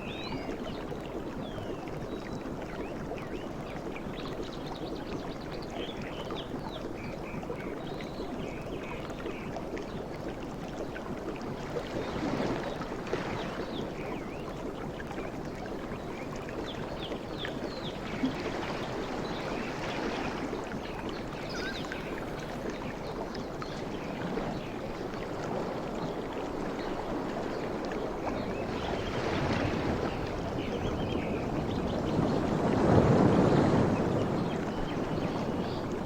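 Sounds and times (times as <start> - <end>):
waves lapping at shore: 18.0 - 36.0
small birds chirping: 21.0 - 22.7.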